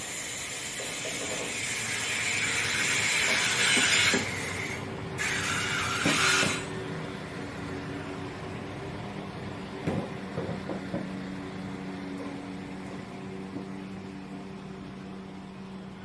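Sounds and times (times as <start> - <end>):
diesel train engines idling: 0.0 - 6.0, 6.6 - 16.0.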